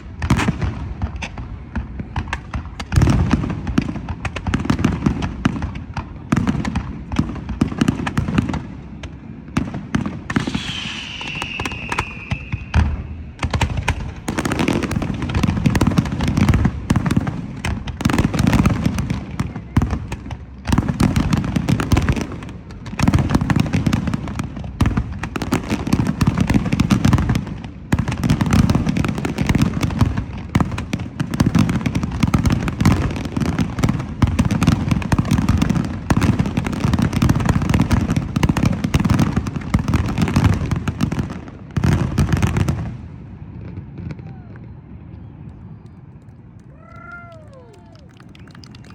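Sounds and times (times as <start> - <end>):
fireworks bangs and crackles: 0.0 - 46.6, 47.3 - 48.9
falling whistle of firework shell: 10.3 - 13.4.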